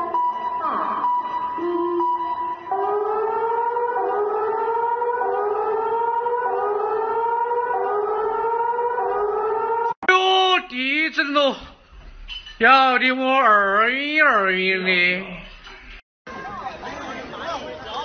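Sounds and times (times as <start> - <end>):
electronic siren whooping: 0.0 - 10.0.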